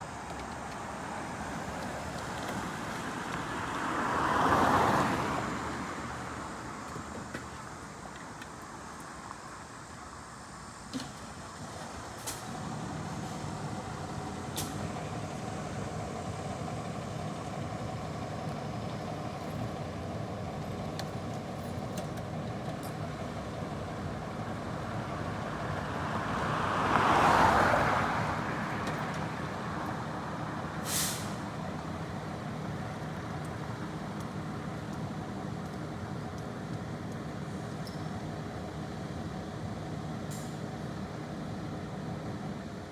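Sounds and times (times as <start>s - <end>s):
vehicle passing: 1.2s - 6.6s, 25.8s - 28.8s.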